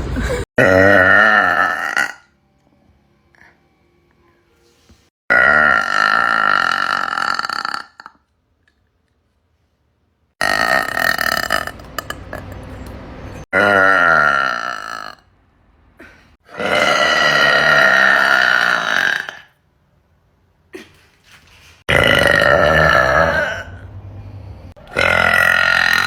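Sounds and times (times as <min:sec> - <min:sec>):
woman burping loudly: 0:00.6 - 0:02.3, 0:05.3 - 0:08.2, 0:10.4 - 0:12.5, 0:13.5 - 0:15.2, 0:16.0 - 0:19.6, 0:21.9 - 0:23.8, 0:24.8 - 0:26.0.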